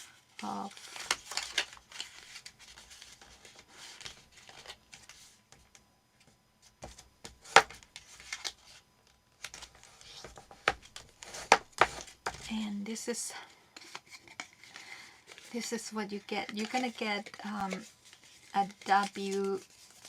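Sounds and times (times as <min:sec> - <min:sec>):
paper rustling while folded: 0:00.0 - 0:05.4, 0:13.8 - 0:20.0.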